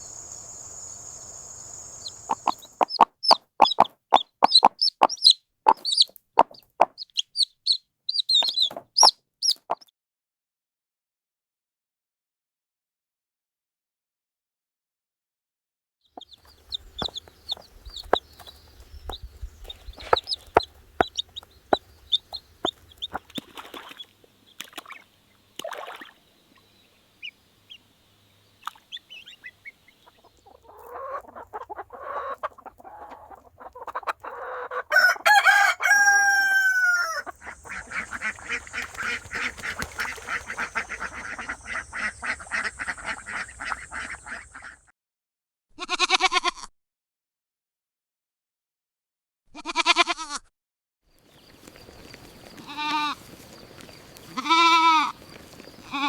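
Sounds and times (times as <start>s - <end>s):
chickens clucking: 0.0s - 9.8s, 16.2s - 26.6s, 28.5s - 44.8s, 51.2s - 56.0s
rooster crowing: 34.6s - 37.3s.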